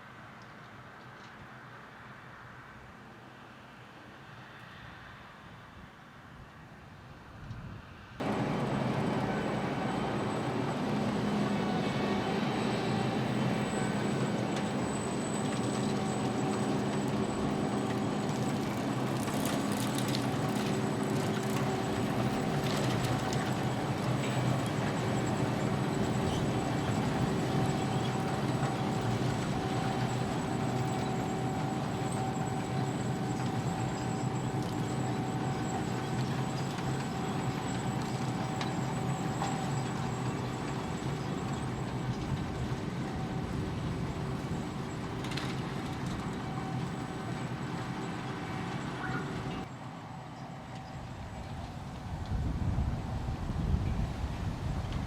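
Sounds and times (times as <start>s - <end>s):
faint high whine: 8.2s - 51.6s
harvester machinery drone: 8.2s - 55.0s.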